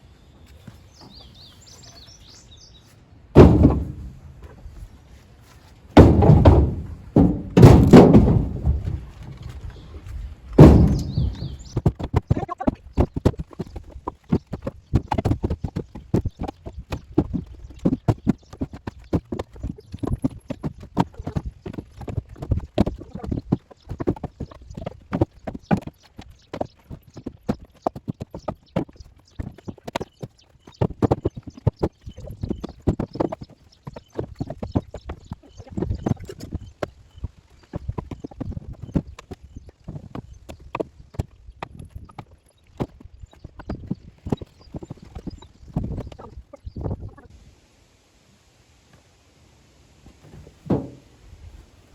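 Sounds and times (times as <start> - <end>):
wood pieces clattering into truck bed: 3.4 - 4.6, 5.9 - 12.3, 50.1 - 51.1.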